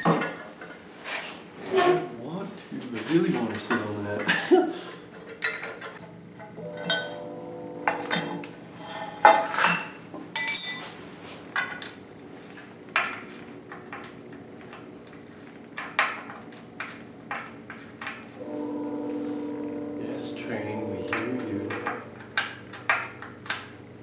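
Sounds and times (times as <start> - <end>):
metal parts clinking: 0.0 - 0.8, 10.4 - 11.2
ringing metal clank: 0.0 - 0.8, 10.4 - 11.2.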